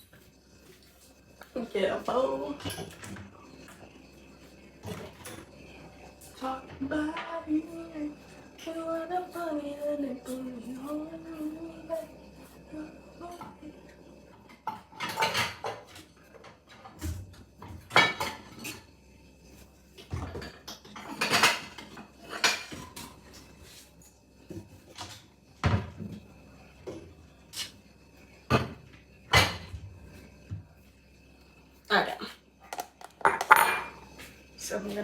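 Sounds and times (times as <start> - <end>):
dishes and utensils clinking: 0.0 - 3.9, 4.8 - 7.7, 14.5 - 18.9, 20.0 - 24.2, 32.6 - 34.3.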